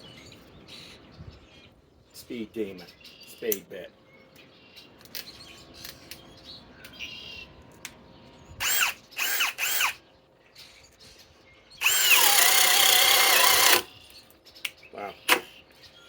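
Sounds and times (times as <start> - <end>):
cordless drill motor spinning: 8.6 - 10.0, 11.8 - 13.9
drill boring into wood: 8.6 - 10.0, 11.8 - 13.9
drill handling clicks: 11.8 - 13.9.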